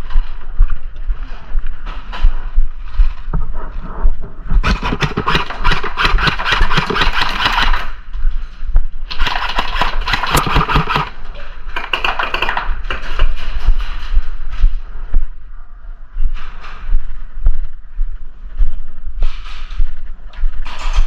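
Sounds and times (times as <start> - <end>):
airsoft gun firing full auto: 4.6 - 8.0, 9.1 - 11.2, 11.8 - 12.7.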